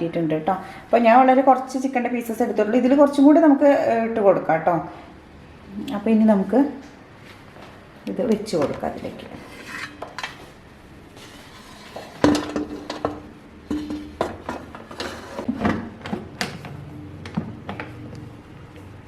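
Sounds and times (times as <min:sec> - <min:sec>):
metal pan clanking: 0:11.9 - 0:15.4.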